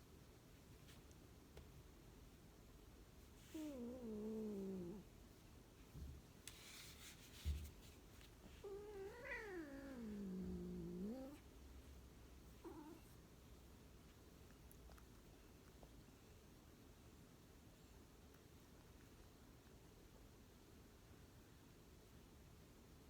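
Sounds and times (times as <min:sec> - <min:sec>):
rustling: 0:03.1 - 0:11.4.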